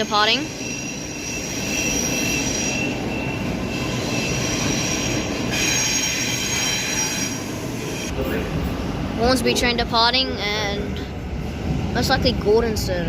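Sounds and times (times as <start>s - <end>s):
high-pitched wheel squealing: 0.0s - 8.1s
electric train departing: 0.0s - 13.0s.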